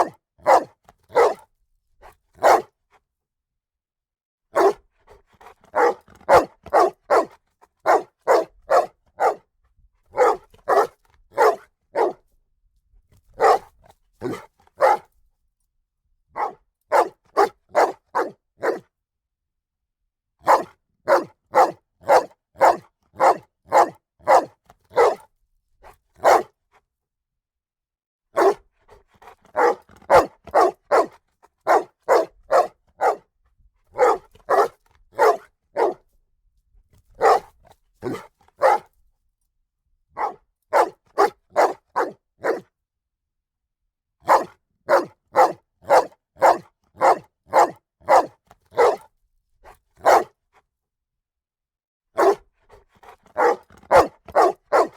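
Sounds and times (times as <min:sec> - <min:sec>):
dog barking loudly: 0:00.0 - 0:01.4, 0:02.4 - 0:02.7, 0:04.5 - 0:04.8, 0:05.7 - 0:09.4, 0:10.1 - 0:12.2, 0:13.4 - 0:15.1, 0:16.4 - 0:18.8, 0:20.4 - 0:25.2, 0:26.2 - 0:26.5, 0:28.4 - 0:28.6, 0:29.5 - 0:33.2, 0:34.0 - 0:36.0, 0:37.2 - 0:38.9, 0:40.2 - 0:42.6, 0:44.2 - 0:49.1, 0:50.0 - 0:50.3, 0:52.2 - 0:52.4, 0:53.0 - 0:54.9.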